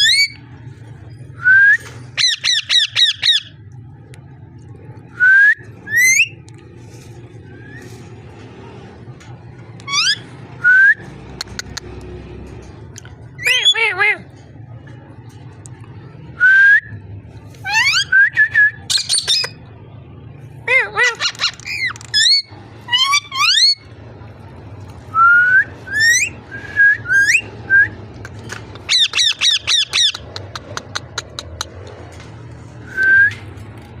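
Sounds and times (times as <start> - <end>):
parrot whistling and squawking: 0.0 - 0.4, 2.2 - 3.6, 5.9 - 6.4, 9.8 - 10.2, 13.4 - 13.8, 17.6 - 19.6, 20.7 - 23.9, 25.9 - 26.4, 27.0 - 27.5, 28.8 - 30.3
low steady hum: 0.0 - 34.0.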